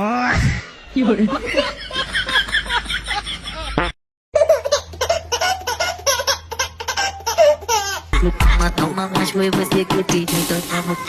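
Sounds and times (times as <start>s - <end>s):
person laughing: 8.2s - 8.8s.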